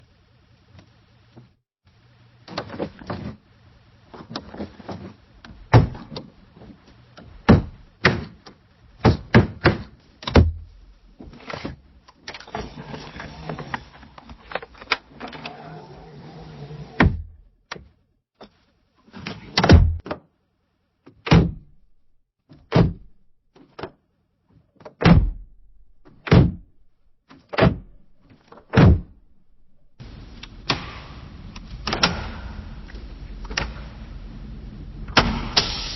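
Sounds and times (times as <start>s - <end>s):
window sliding scrape: 12.4s - 17.1s.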